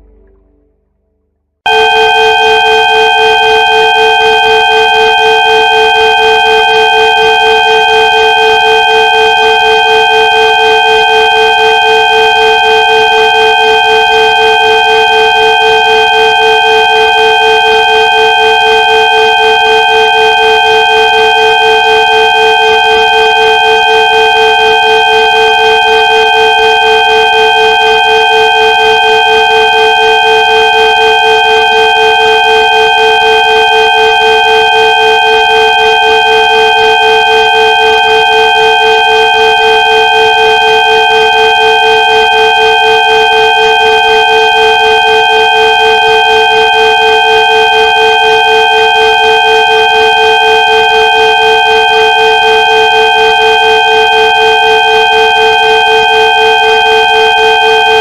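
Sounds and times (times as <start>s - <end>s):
steady pulsing synthesized tones: 0.0s - 1.2s.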